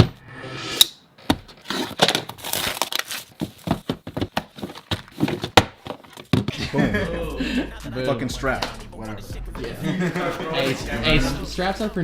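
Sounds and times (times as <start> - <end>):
packaging rustling and crinkling: 1.5 - 6.4.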